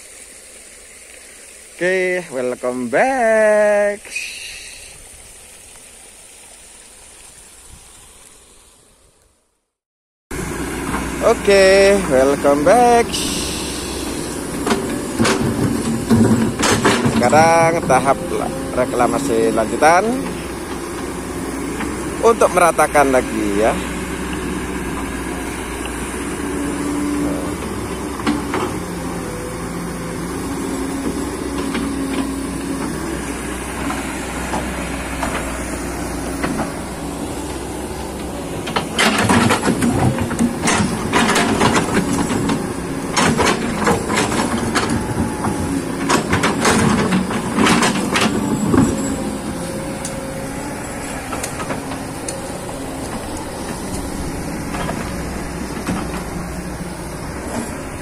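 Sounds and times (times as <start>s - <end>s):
excavator diesel engine running: 10.3s - 58.0s
bucket knocking and scraping rocks: 14.6s - 20.2s.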